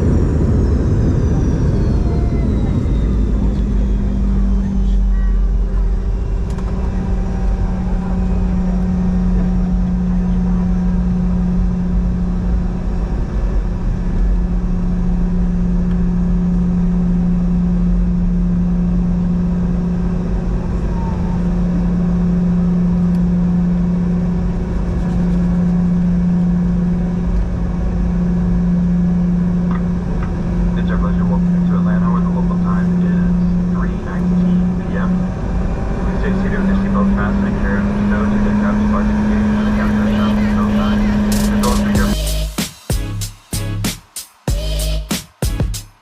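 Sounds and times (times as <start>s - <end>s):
vehicle drone: 0.0s - 46.0s.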